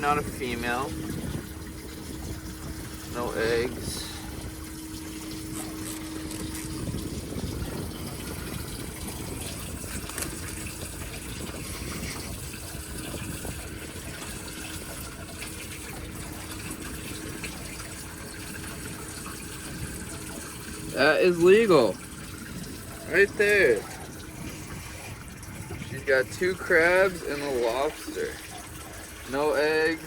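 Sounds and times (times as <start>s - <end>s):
running splashing water: 0.0s - 30.0s.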